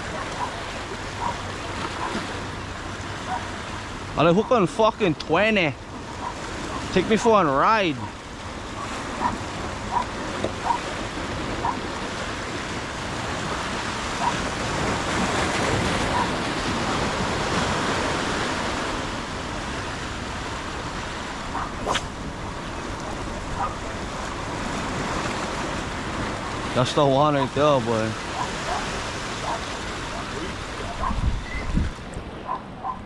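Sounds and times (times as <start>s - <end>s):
surf washing: 0.0s - 32.3s
wind on microphone: 21.5s - 25.7s, 28.2s - 33.0s.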